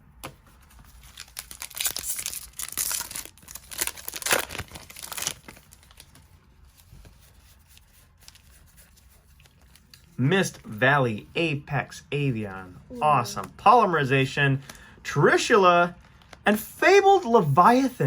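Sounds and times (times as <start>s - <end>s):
foil pack ripping and crinkling: 0.9s - 6.2s.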